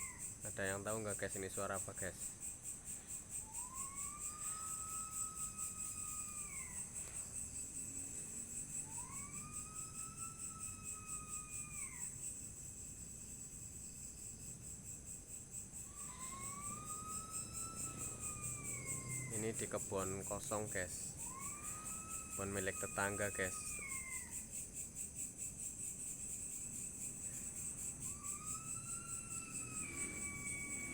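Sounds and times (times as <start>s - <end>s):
insects chirring: 0.0s - 30.9s
rising and falling whistle: 16.1s - 19.7s, 28.1s - 30.9s.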